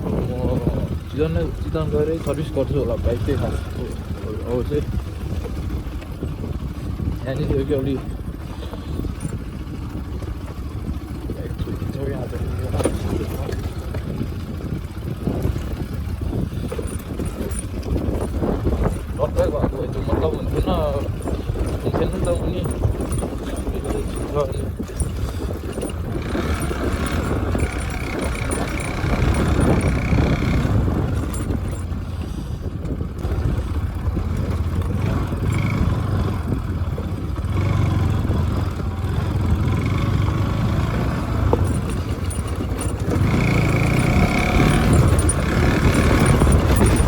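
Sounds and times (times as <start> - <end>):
motorcycle engine: 0.0 - 47.0
wind rumble on microphone: 0.0 - 47.0.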